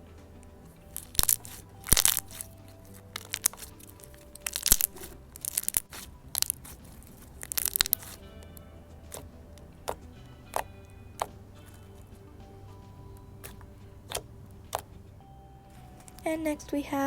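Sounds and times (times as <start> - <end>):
soft background music: 0.0 - 17.0
slime squishing and popping: 0.9 - 8.2, 9.1 - 12.1, 13.3 - 14.9.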